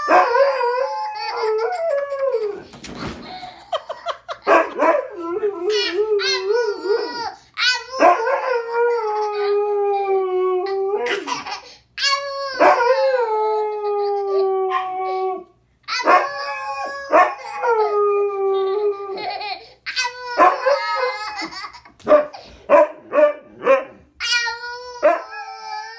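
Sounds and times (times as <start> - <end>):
dog howling: 0.0 - 2.6, 12.6 - 19.2, 20.3 - 21.5, 25.0 - 25.9.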